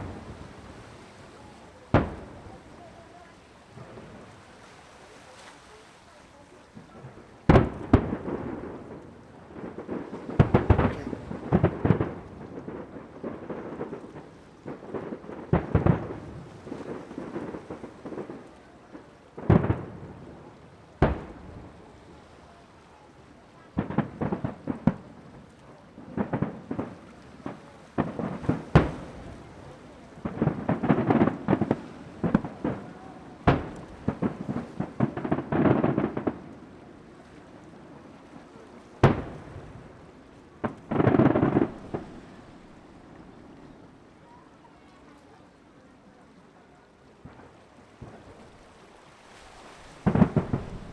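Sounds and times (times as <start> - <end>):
firework shells bursting: 0.0 - 3.0, 21.0 - 21.8, 26.2 - 36.5, 39.0 - 40.0, 50.1 - 50.9.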